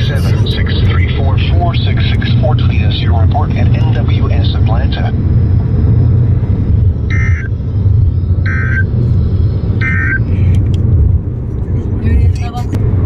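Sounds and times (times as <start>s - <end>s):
car cabin rumble: 0.0s - 13.0s
buzzy two-tone data bursts: 7.1s - 9.0s, 9.8s - 10.2s.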